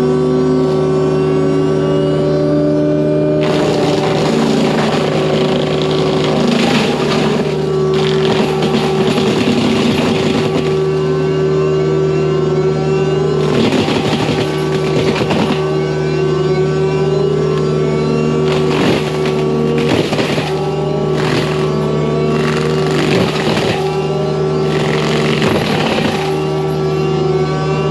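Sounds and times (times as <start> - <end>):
forestry mulcher droning: 0.0 - 27.9
mulcher drum grinding wood: 3.4 - 11.4, 13.2 - 27.8.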